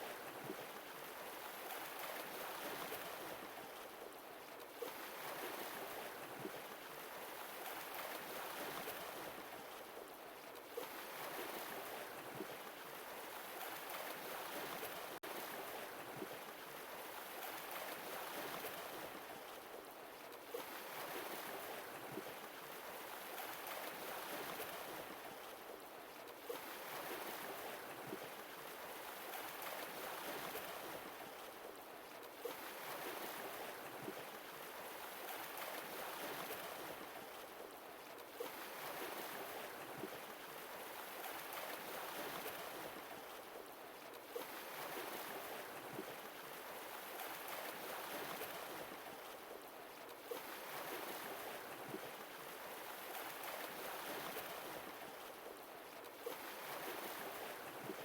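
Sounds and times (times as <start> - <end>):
sea waves washing on shore: 44.3 - 58.0.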